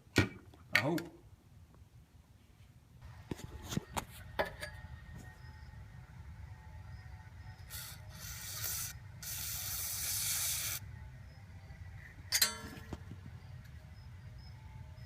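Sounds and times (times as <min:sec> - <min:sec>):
aerosol spray hissing: 0:07.7 - 0:10.8
metallic clank: 0:12.3 - 0:13.1.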